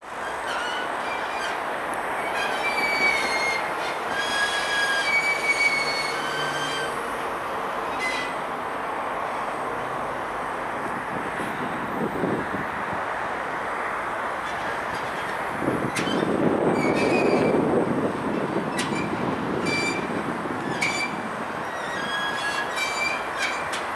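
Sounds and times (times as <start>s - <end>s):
metal squealing and grinding: 0.1s - 7.0s, 7.8s - 8.4s, 14.4s - 17.6s, 18.7s - 23.9s.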